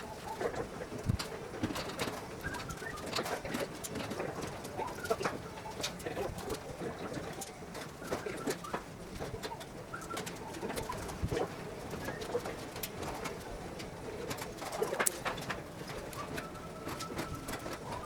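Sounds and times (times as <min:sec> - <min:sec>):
pigeons cooing: 0:00.0 - 0:18.0.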